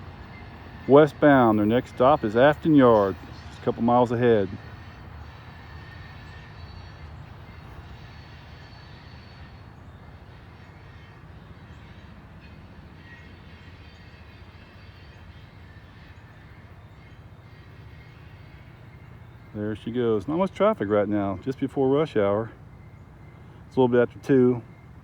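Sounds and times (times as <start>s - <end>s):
steel wheels rumbling on rails: 0.0s - 21.5s
faint high whine: 0.0s - 25.0s.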